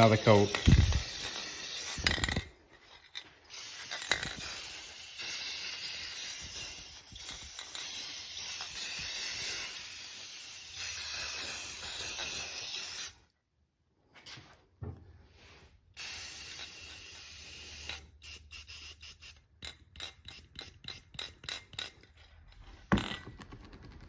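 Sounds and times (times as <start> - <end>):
paint spraying hiss: 0.0 - 2.2, 3.5 - 13.2.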